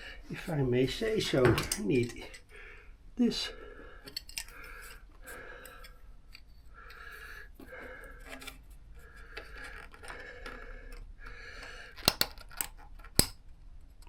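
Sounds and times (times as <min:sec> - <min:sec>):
tools scraping and clicking: 0:01.0 - 0:02.5, 0:04.0 - 0:13.4.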